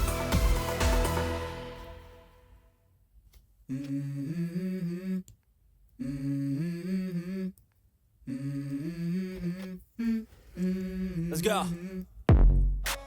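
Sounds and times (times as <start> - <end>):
low voice humming melody: 3.7 - 5.3, 6.0 - 7.6, 8.2 - 12.1.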